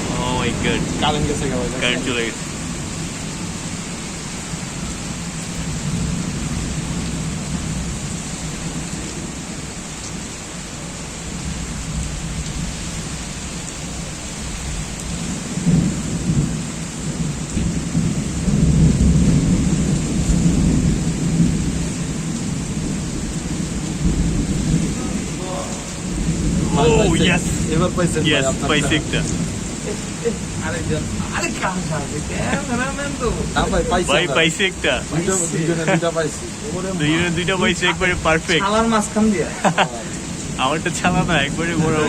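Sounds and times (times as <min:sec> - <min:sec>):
low rumbling thunder: 0:00.0 - 0:10.3, 0:11.2 - 0:34.0
heavy rain: 0:00.0 - 0:42.0.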